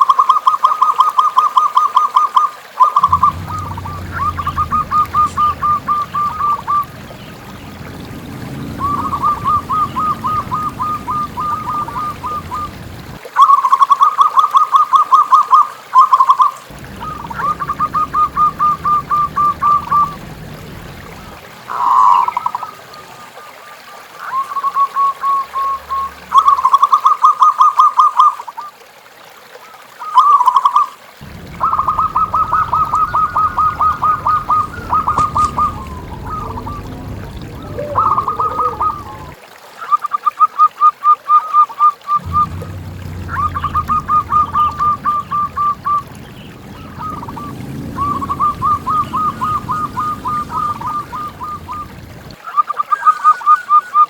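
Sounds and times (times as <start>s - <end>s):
doves cooing in staccato notes: 3.0s - 13.2s, 16.7s - 22.9s, 31.2s - 39.4s, 42.2s - 52.4s.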